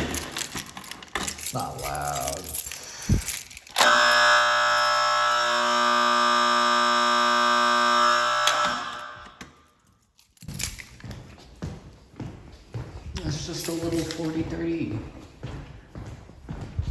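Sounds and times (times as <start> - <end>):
fire alarm horn buzzing: 3.8 - 9.6.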